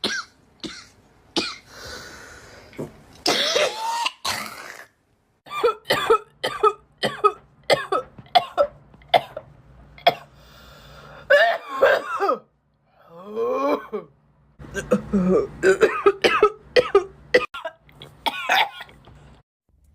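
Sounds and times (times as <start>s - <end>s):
girl coughing: 3.3s - 4.6s, 5.5s - 9.4s, 11.3s - 12.5s, 14.7s - 19.0s.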